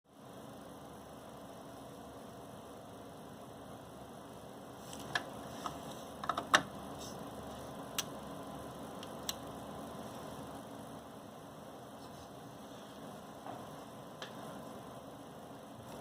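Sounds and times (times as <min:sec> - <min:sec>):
steady low hum: 0:00.1 - 0:16.0
computer hardware clicks and taps: 0:06.2 - 0:06.7.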